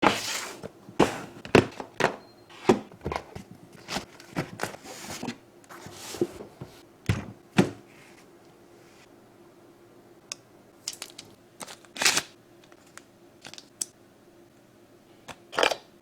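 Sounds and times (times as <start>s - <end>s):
packaging rustling: 2.8s - 6.7s.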